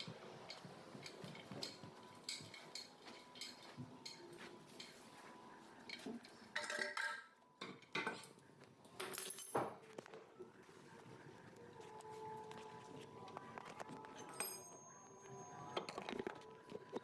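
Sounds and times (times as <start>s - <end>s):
hard objects clinking and clattering: 5.9s - 9.9s, 13.8s - 17.0s.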